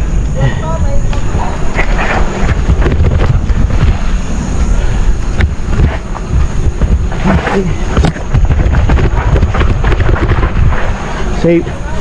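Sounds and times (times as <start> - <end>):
bike rattle: 0.0 - 12.0
wind buffeting microphone: 0.0 - 12.0.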